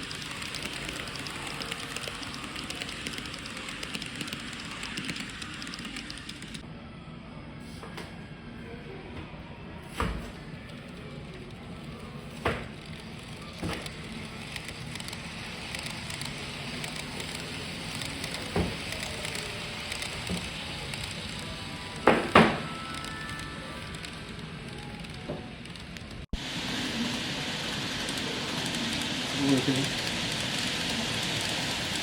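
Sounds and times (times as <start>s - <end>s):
model trains running: 0.0s - 6.7s, 10.3s - 32.0s.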